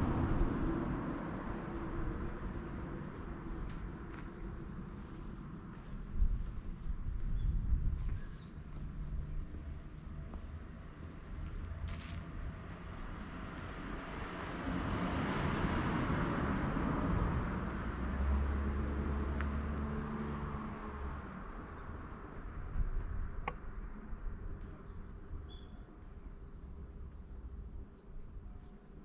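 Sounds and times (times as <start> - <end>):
road vehicle passing by: 0.0 - 6.7, 8.4 - 22.8.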